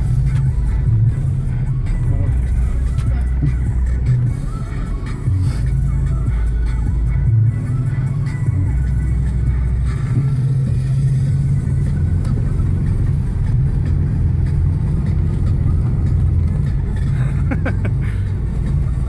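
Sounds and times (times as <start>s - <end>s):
car engine running: 0.0s - 19.0s.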